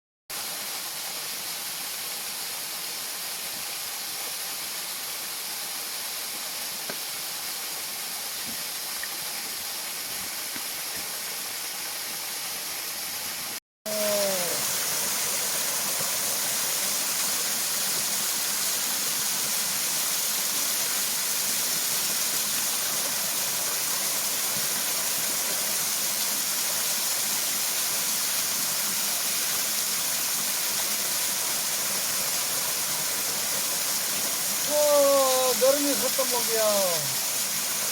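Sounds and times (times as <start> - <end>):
waterfall rushing: 13.9 - 27.5, 31.3 - 37.9.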